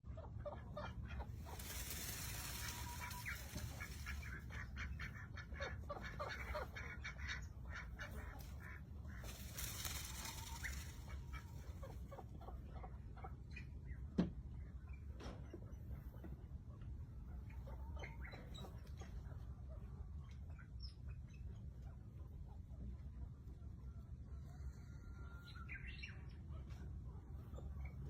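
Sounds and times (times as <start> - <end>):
peafowl calling: 0.4 - 12.3
hissing rustle: 1.2 - 5.2, 8.1 - 12.1.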